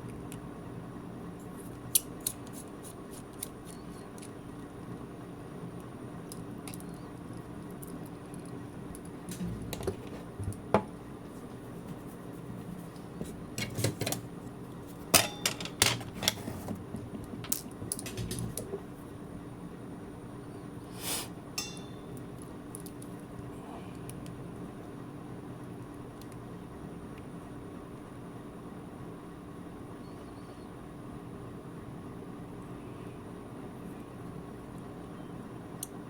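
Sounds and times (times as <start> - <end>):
steady low hum: 0.0 - 36.0
small tools and parts clicking: 6.3 - 9.2.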